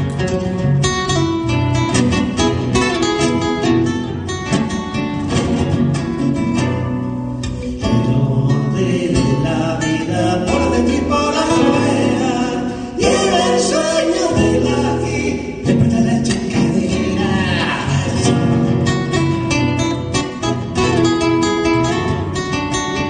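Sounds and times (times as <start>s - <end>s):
acoustic guitar playing folk: 0.0s - 23.0s
two voices singing harmonies: 7.8s - 18.6s.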